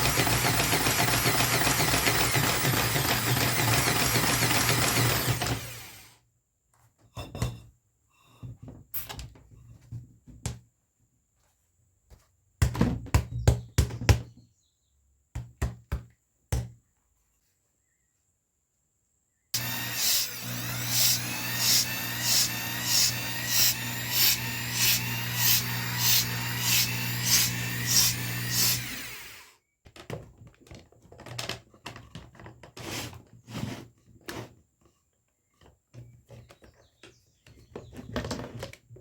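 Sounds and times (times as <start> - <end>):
electric drill motor: 0.0 - 6.2, 19.6 - 29.6.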